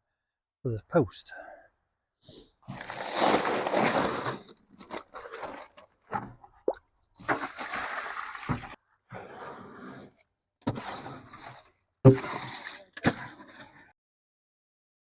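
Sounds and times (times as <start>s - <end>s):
wet concrete sloshing: 6.6s - 8.8s, 10.7s - 13.5s.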